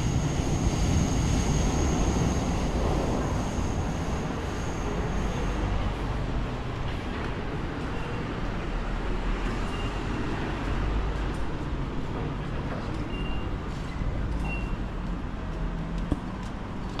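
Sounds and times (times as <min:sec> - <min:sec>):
passing vehicles rumble: 0:00.0 - 0:17.0.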